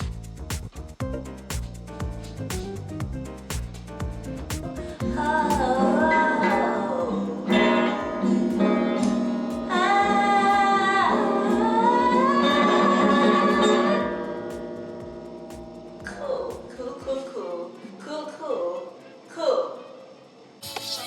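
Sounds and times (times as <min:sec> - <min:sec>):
plucked guitar: 0:04.1 - 0:17.2
woman singing: 0:05.0 - 0:14.4, 0:16.1 - 0:19.8.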